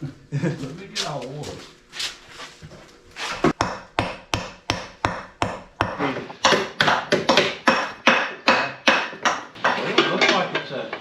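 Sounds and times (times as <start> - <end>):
hammer striking metal: 3.5 - 10.6.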